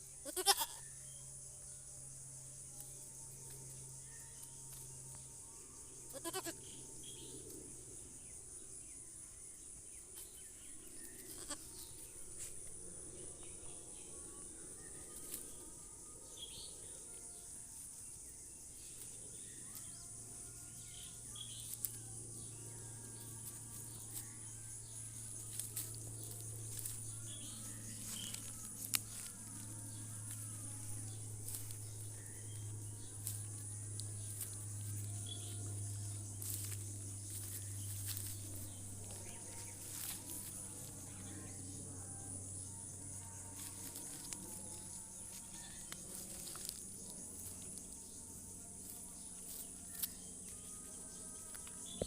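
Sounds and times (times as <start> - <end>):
goats bleating: 0.2 - 0.8, 6.1 - 6.6, 11.3 - 11.7
low hum: 1.0 - 52.0.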